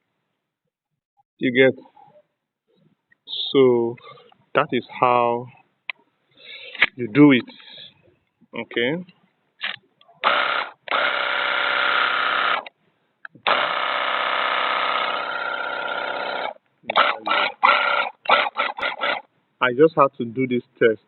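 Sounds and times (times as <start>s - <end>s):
pressure washer pump motor: 10.2s - 12.7s, 13.4s - 19.2s.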